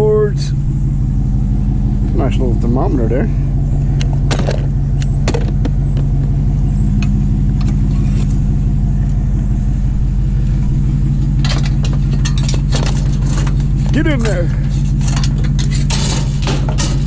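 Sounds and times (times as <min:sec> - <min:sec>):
vehicle engine humming: 0:00.0 - 0:17.0.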